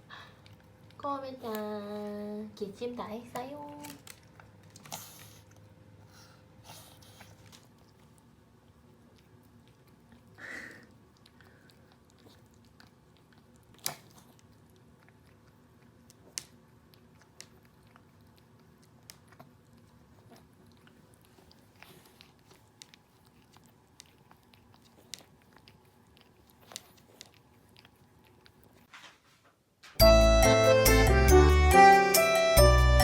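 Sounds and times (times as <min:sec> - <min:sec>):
dog licking wet clicks: 0:07.1 - 0:28.9.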